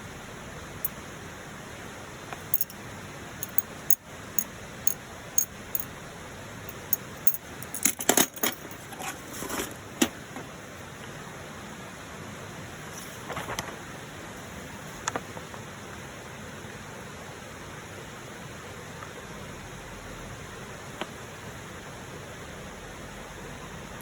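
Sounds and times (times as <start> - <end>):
light metallic clinks: 2.5 - 2.8, 3.4 - 4.0, 5.4 - 5.9, 6.7 - 8.9.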